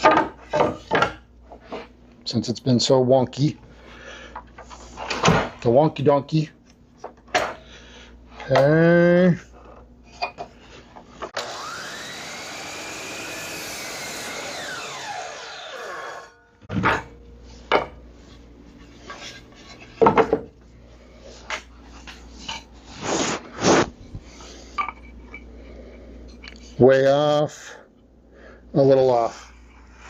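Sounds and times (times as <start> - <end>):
miter saw cutting wood: 11.4 - 16.5.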